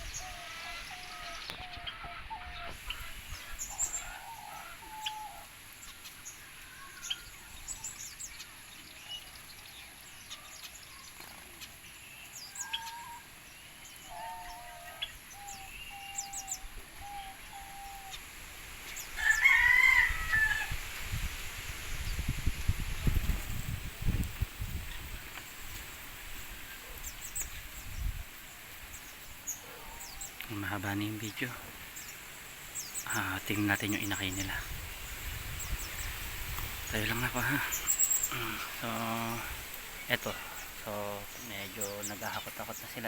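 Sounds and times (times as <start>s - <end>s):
birds calling: 0.0s - 43.0s
rooster crowing: 3.8s - 5.5s, 19.1s - 20.9s.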